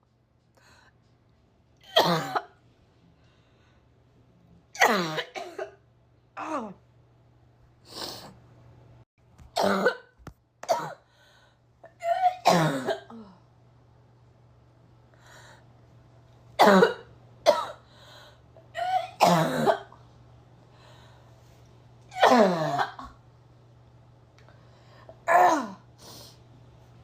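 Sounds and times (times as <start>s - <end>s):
person coughing: 1.8s - 2.6s, 4.8s - 5.8s, 9.6s - 10.1s, 10.7s - 11.0s, 11.9s - 13.4s, 16.6s - 17.8s, 18.8s - 20.0s, 22.1s - 23.2s, 25.2s - 25.9s.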